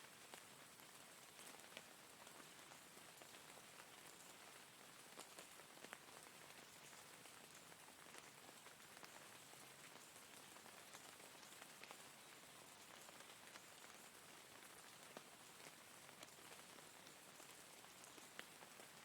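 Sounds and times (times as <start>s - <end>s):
faint steady rain hiss: 0.0s - 19.0s
raindrops ticking: 9.8s - 19.0s.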